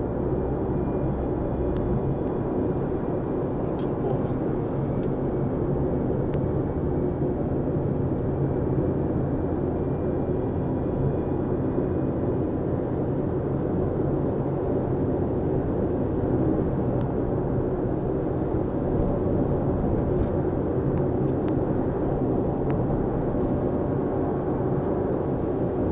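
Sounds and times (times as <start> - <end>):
car droning roar: 0.0 - 25.9.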